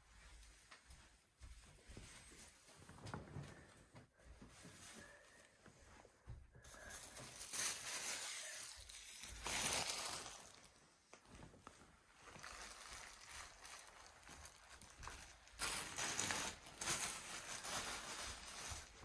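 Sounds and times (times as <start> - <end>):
packaging rustling and crinkling: 6.7 - 19.0.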